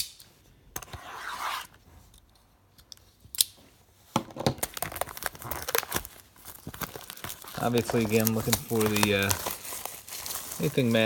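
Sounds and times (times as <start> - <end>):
soft scrape: 0.9 - 2.1
plastic wrap crinkling: 4.5 - 11.0.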